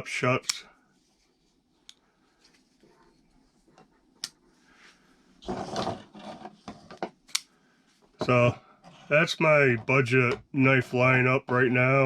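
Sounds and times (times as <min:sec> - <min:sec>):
scraping handling noise: 0:05.4 - 0:07.4.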